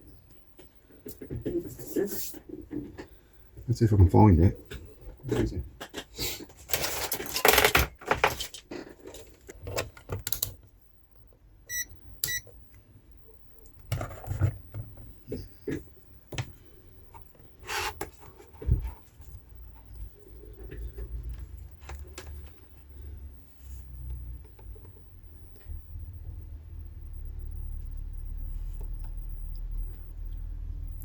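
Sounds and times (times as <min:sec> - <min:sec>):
tools rummaging and clattering: 0:06.5 - 0:10.2
short electronic beeps: 0:11.7 - 0:12.4.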